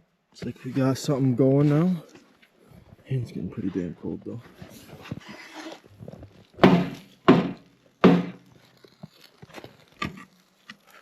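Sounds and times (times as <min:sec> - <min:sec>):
heavy wooden thunks: 0:06.6 - 0:08.4.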